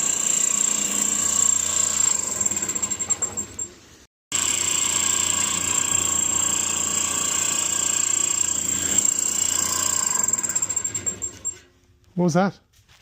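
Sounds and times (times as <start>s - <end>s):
bandsaw motor whining: 4.3s - 11.7s.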